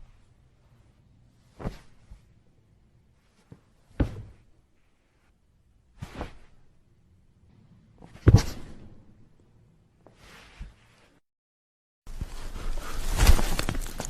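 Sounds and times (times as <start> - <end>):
knock or scuff: 4.0 - 4.4, 6.0 - 6.5.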